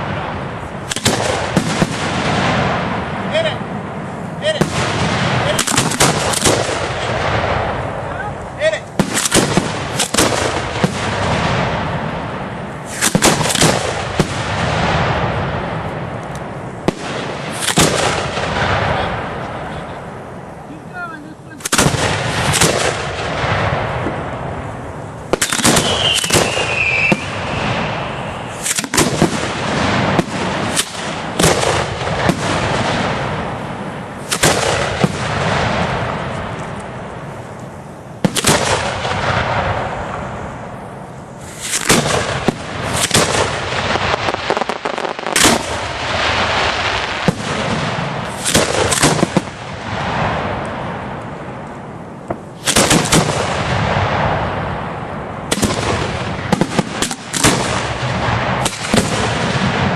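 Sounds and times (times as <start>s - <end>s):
firework shells bursting with echo: 0.0s - 20.7s, 21.6s - 59.9s
falling firework whistle: 25.3s - 32.4s.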